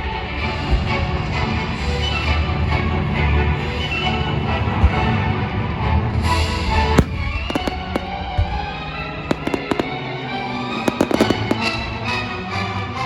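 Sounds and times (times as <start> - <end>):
fireworks cracking and popping: 7.0 - 8.3, 9.3 - 10.1, 10.8 - 11.9.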